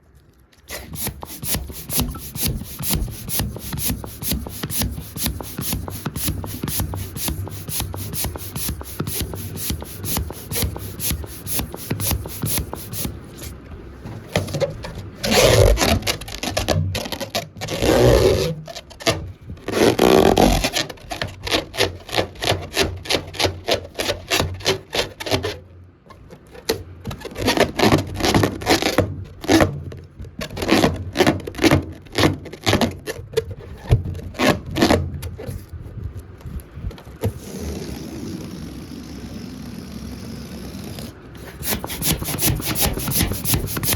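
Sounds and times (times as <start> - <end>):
rubber balloon squeaking: 0.7 - 13.5, 14.4 - 21.0, 37.3 - 43.9.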